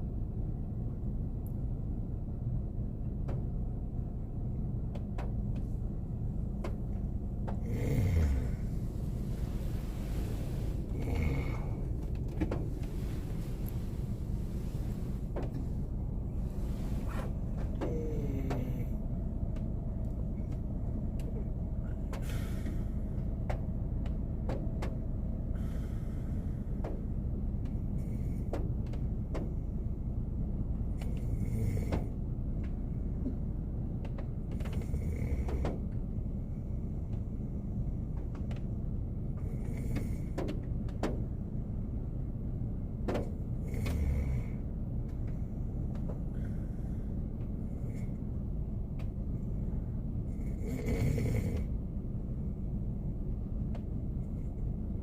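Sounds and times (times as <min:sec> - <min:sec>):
car low hum: 0:00.0 - 0:55.0
man snoring: 0:07.6 - 0:08.8, 0:10.5 - 0:12.0, 0:17.8 - 0:18.9, 0:31.4 - 0:32.0, 0:43.7 - 0:44.6, 0:50.5 - 0:51.7.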